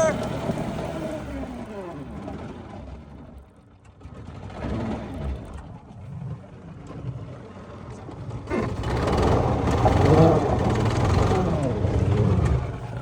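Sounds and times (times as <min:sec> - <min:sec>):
golf cart engine running: 0:08.4 - 0:13.0.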